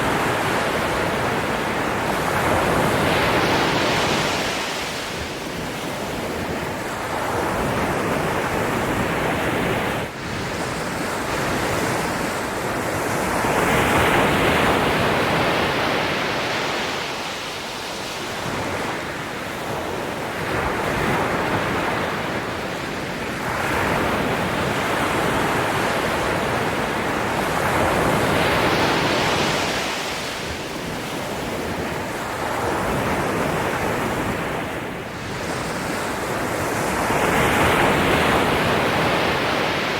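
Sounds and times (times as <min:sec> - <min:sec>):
ocean waves washing on shore: 0:00.0 - 0:39.9.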